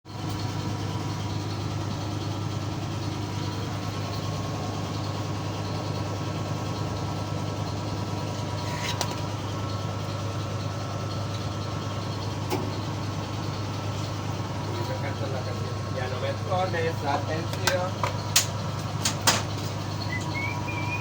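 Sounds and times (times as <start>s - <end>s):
car engine idling: 0.1s - 21.0s.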